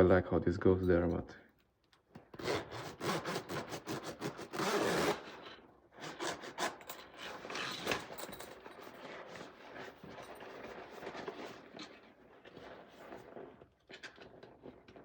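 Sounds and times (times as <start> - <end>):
backpack zipper: 2.4 - 5.3.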